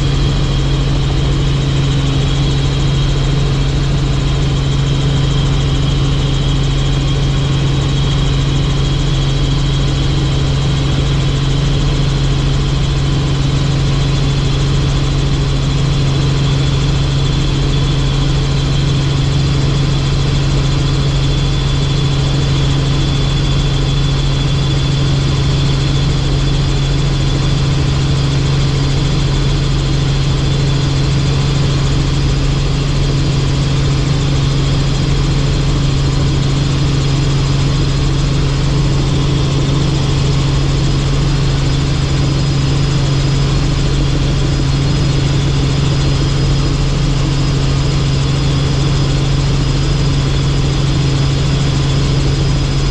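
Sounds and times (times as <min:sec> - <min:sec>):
helicopter rotor and engine drone: 0:00.0 - 0:52.9.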